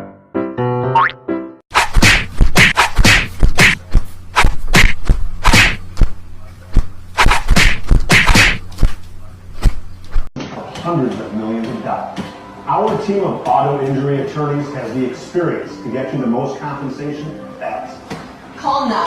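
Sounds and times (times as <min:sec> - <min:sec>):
sharp whacks: 0:01.7 - 0:05.8, 0:07.2 - 0:09.0
steady low hum: 0:01.8 - 0:10.3.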